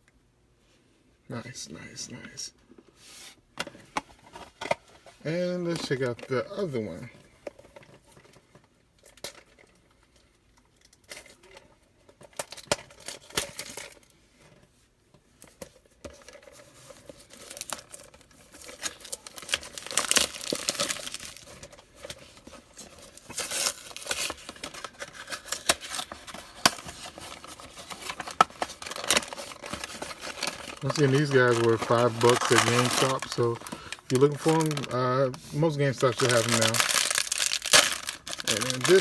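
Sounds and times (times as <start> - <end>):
packaging tearing and crinkling: 17.2 - 39.0.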